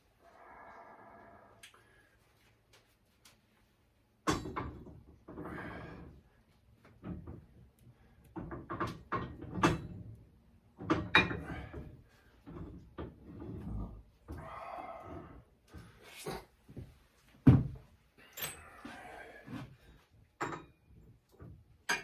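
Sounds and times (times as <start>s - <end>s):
sharp knocks and clunks: 17.4s - 17.8s.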